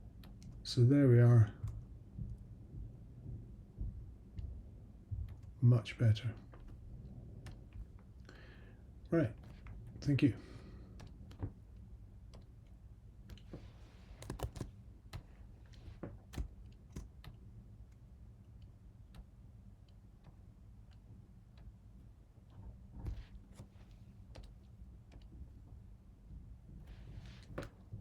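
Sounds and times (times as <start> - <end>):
keyboard and mouse clicks: 0.0 - 0.6, 7.4 - 8.2, 9.3 - 10.1, 10.8 - 25.4
low steady hum: 0.0 - 28.0.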